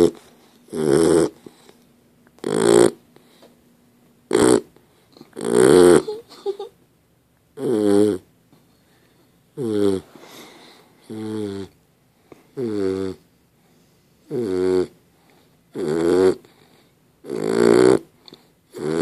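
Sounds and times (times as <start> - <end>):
dog snoring: 0.0 - 1.8, 2.4 - 3.5, 4.3 - 6.3, 7.6 - 8.3, 9.6 - 11.8, 12.5 - 13.3, 14.2 - 19.0.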